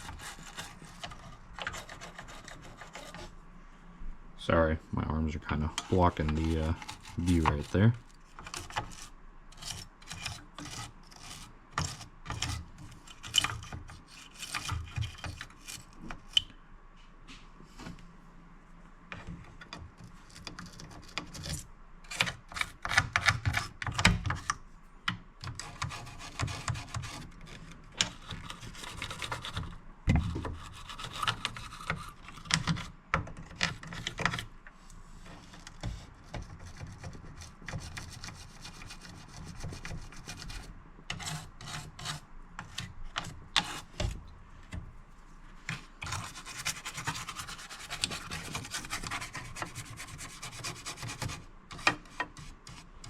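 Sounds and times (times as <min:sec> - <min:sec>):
toothbrush scrubbing circuit board: 0:05.6 - 0:07.9, 0:30.6 - 0:32.4, 0:46.0 - 0:51.4.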